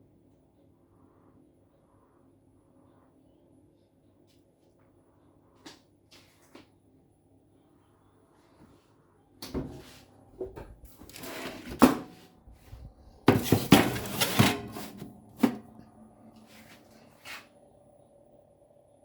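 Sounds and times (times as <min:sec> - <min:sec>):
scraping and rustling: 0:10.9 - 0:15.6.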